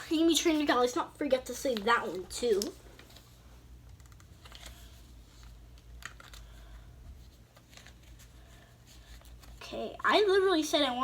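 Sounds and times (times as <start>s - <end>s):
card sleeve rustling: 1.5s - 9.7s.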